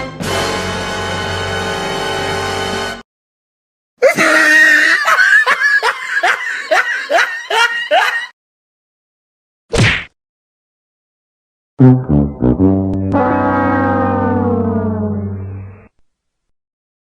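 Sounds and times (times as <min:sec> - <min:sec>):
music: 0:00.0 - 0:03.0, 0:11.8 - 0:13.8.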